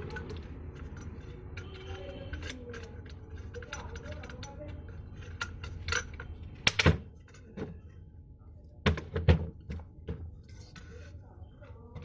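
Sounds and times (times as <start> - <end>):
metal parts knocking and clunking: 0.0 - 7.9, 8.8 - 11.1.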